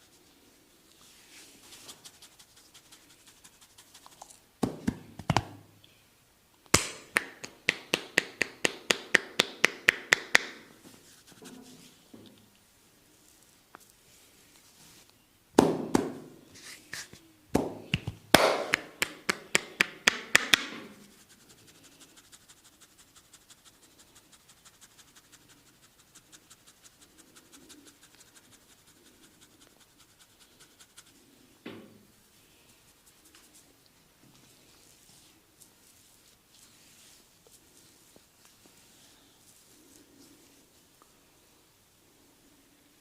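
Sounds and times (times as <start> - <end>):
sharp hand slaps: 6.7 - 10.6, 17.5 - 20.8.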